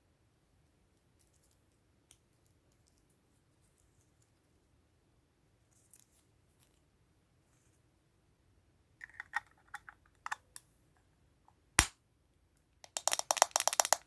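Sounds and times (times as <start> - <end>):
plastic toy packaging clicks: 12.9 - 14.0.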